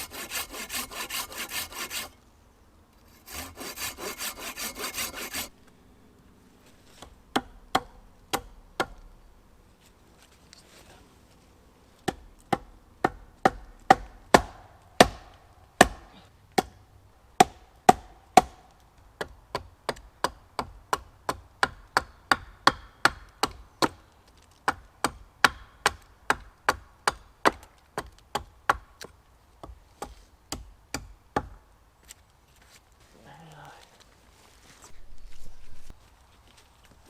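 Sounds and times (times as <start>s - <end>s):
axe chopping wood: 7.0s - 9.1s, 12.0s - 16.8s, 17.4s - 24.0s.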